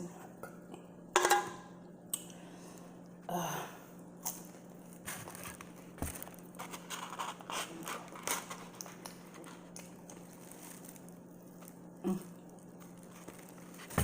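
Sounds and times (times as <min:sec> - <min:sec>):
steady low hum: 0:00.0 - 0:14.0
person eating: 0:04.2 - 0:14.0.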